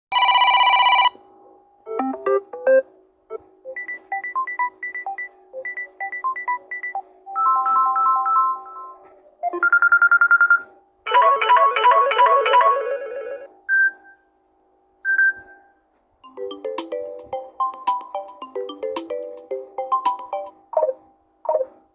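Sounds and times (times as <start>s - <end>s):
electronic ringtone melodies: 7.4s - 13.5s, 16.3s - 21.8s.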